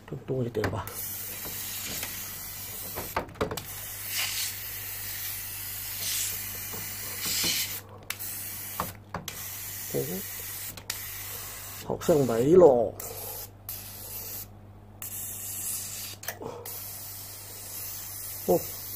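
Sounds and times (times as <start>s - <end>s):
aerosol can spraying: 1.0s - 12.5s, 13.1s - 18.9s.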